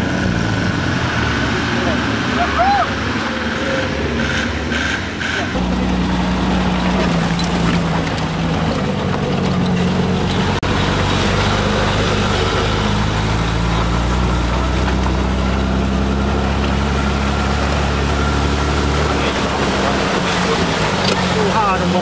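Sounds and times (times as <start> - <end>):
engine running: 0.0 - 22.0.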